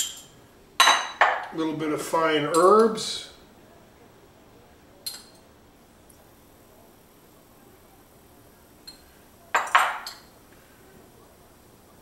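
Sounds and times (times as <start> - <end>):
utensil clinking against a dish: 8.8 - 10.4.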